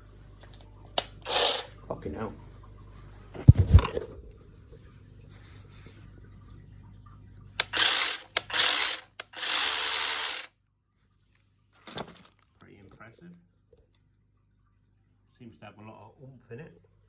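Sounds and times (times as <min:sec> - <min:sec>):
mini chainsaw whirring: 0:01.0 - 0:01.7, 0:07.6 - 0:10.5.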